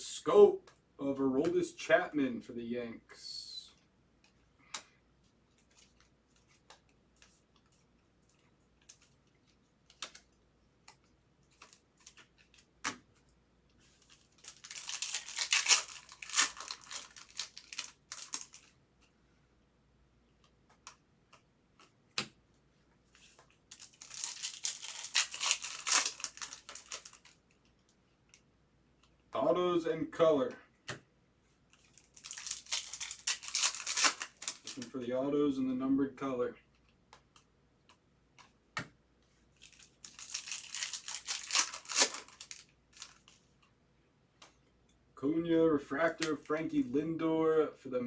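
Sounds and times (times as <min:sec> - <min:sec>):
cards clicking and tapping: 0:09.9 - 0:13.2
wrappers tearing and crinkling: 0:14.0 - 0:18.7, 0:23.7 - 0:27.4, 0:31.8 - 0:34.9, 0:39.6 - 0:43.3.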